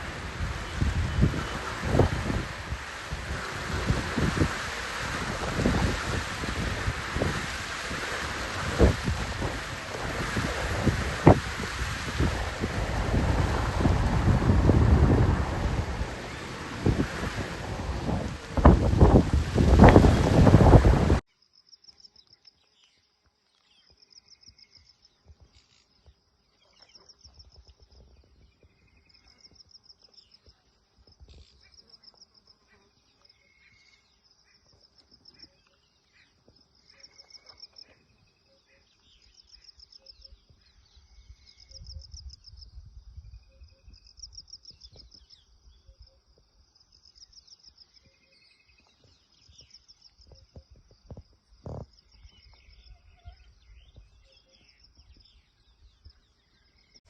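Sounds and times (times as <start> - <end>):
wind rumble on microphone: 0.0 - 21.2, 40.2 - 46.1, 48.9 - 56.5
bird chirps: 52.0 - 57.0.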